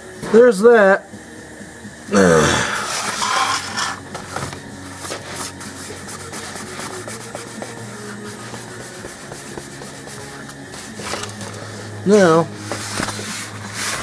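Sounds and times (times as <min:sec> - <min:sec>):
person groaning: 0:02.1 - 0:03.1
scraping and rubbing: 0:02.7 - 0:12.0, 0:12.6 - 0:14.0.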